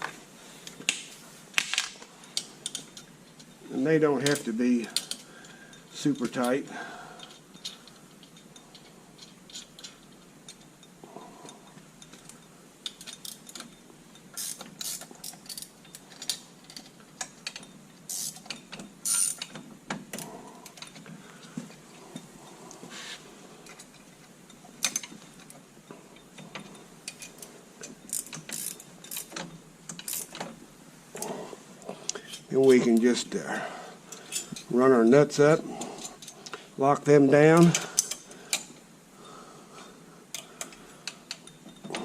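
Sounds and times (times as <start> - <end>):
wrench clicking on metal: 14.4 - 16.8, 17.4 - 19.5, 28.1 - 30.4.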